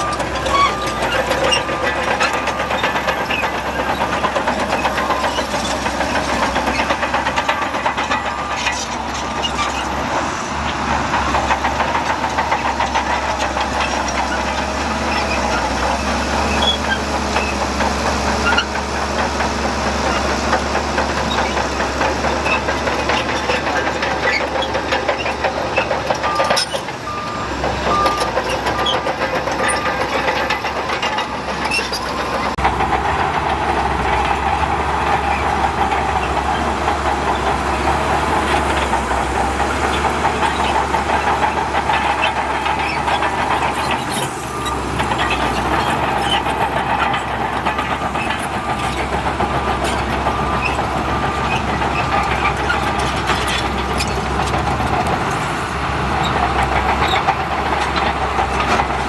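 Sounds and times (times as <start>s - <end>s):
heavy diesel machinery running: 0.0s - 59.0s
reversing alarm beeps: 26.2s - 28.9s.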